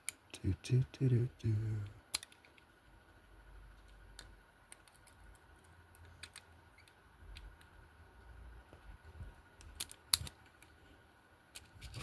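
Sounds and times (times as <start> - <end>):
handcuffs clicking: 2.1 - 2.5.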